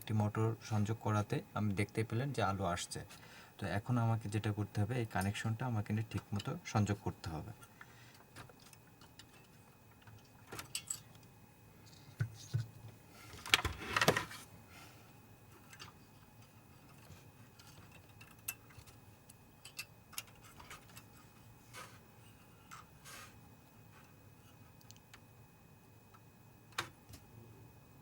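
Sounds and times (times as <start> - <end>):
small clicks and rattles of parts: 6.1 - 6.6, 7.6 - 12.7, 15.5 - 22.0, 22.6 - 22.9, 24.0 - 25.3.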